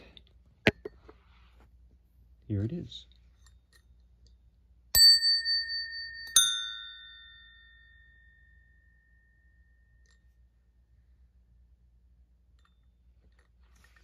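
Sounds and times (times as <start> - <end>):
bicycle bell ringing: 5.0 - 10.2.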